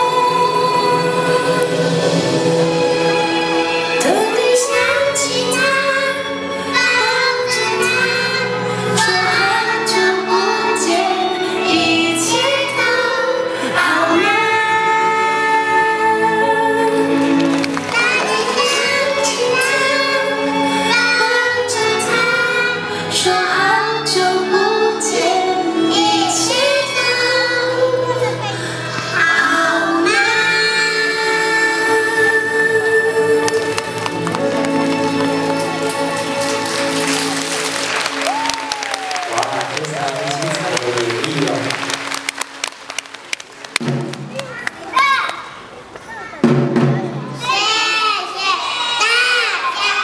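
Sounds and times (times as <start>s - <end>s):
children singing: 0.0s - 28.4s, 29.1s - 36.6s, 47.3s - 50.0s
instrumental music: 0.0s - 44.6s.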